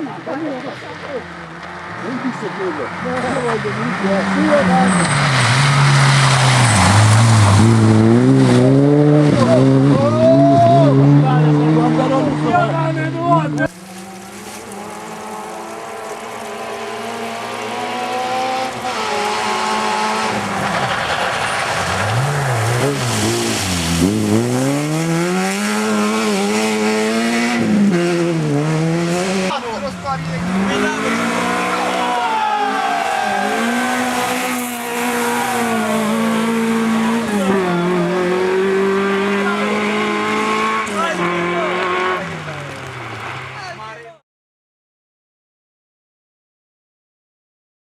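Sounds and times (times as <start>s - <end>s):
rally car engine revving: 0.0s - 44.2s.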